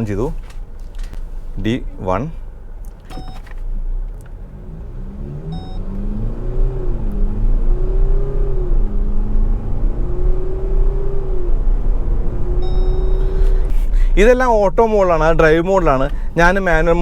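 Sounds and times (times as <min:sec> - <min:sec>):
diesel engine under full throttle: 0:01.0 - 0:14.3.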